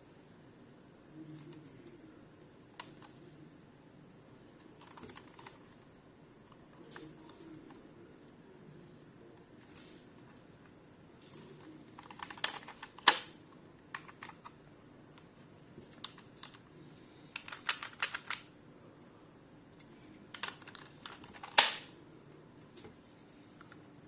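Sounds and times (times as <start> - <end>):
loud plastic snaps: 12.4 - 13.4, 20.4 - 21.9.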